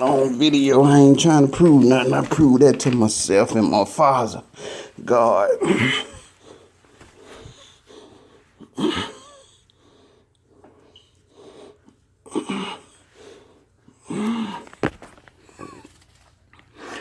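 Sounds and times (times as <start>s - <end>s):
man breathing hard: 4.5s - 5.0s, 5.9s - 8.7s, 9.7s - 14.8s.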